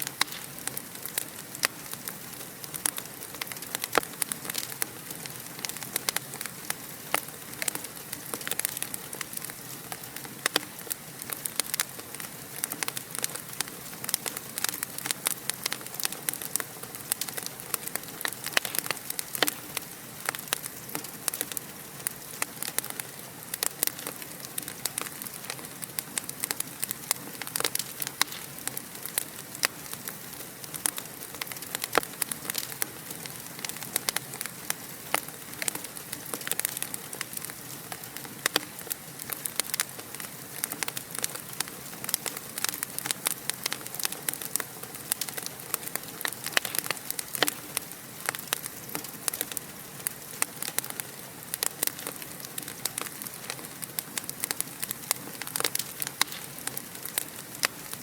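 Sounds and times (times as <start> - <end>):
fire pops and snaps: 0.0 - 58.0
soft hiss of fire: 0.0 - 58.0
wood fire crackling: 0.0 - 58.0.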